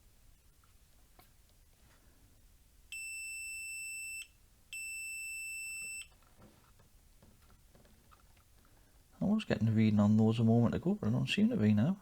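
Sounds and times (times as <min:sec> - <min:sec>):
multimeter high-pitched beeps: 0:02.9 - 0:06.1.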